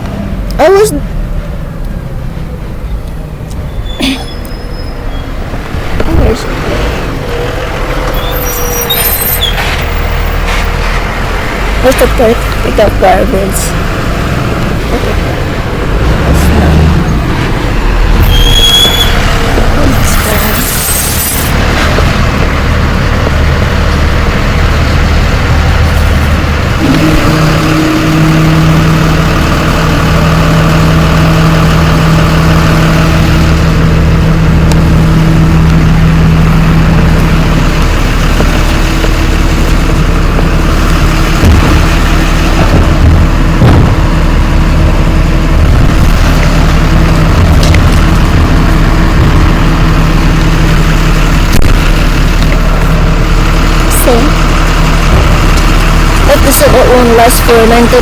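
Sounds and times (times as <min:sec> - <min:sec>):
garbage truck diesel engine rumbling: 0:00.0 - 0:58.0
brief high squeal: 0:03.6 - 0:05.3, 0:08.2 - 0:09.6, 0:18.2 - 0:19.3.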